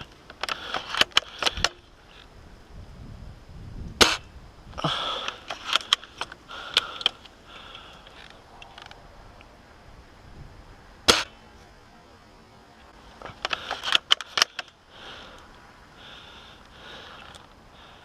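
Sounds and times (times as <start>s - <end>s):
rifle bolt clicking and rattling: 0.0s - 1.8s, 5.2s - 9.0s, 13.2s - 14.8s
airsoft rifle sharp cracks: 4.0s - 4.2s, 11.1s - 11.4s.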